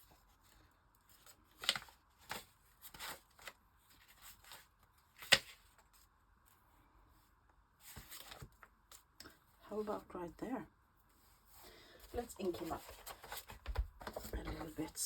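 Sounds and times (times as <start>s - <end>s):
paper rustling: 7.8s - 9.1s, 11.8s - 15.0s.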